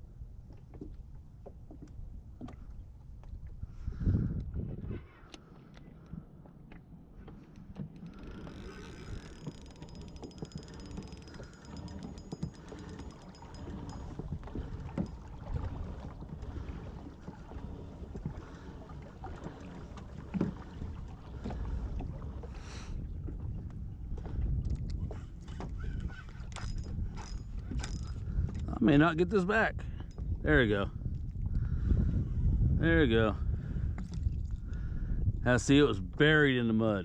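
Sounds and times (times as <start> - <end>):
water lapping: 0.4 - 30.7, 33.6 - 35.0
fishing reel clicking: 8.1 - 14.2, 26.0 - 28.2.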